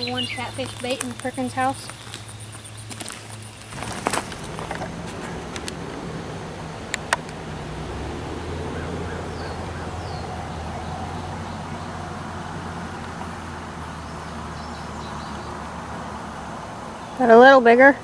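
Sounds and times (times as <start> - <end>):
faint bird calls: 0.0 - 15.7
low hum: 0.0 - 17.5.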